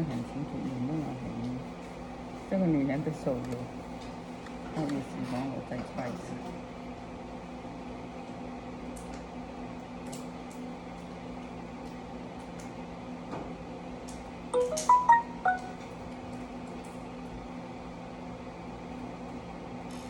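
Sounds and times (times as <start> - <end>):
short electronic chime: 14.6 - 15.8.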